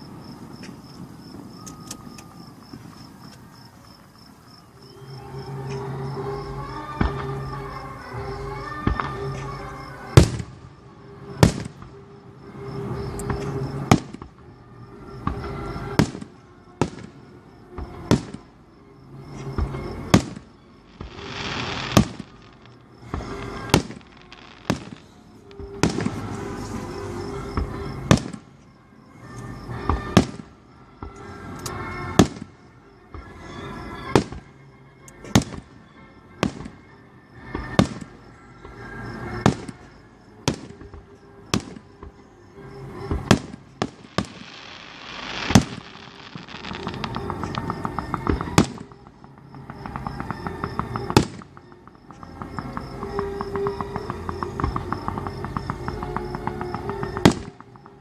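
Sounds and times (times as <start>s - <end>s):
fireworks bursting with echo: 8.5s - 14.4s, 15.2s - 18.6s, 19.5s - 28.5s, 29.7s - 30.6s, 32.0s - 32.6s, 39.3s - 42.1s, 42.8s - 58.0s
hissing crackle: 20.1s - 27.3s, 43.2s - 49.2s.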